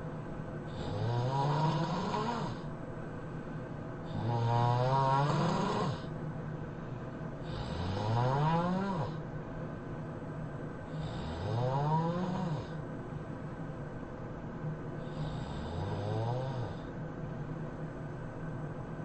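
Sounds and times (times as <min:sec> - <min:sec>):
man snoring heavily: 0:00.7 - 0:02.7, 0:04.1 - 0:06.1, 0:07.4 - 0:09.2, 0:10.9 - 0:12.8, 0:15.0 - 0:17.0.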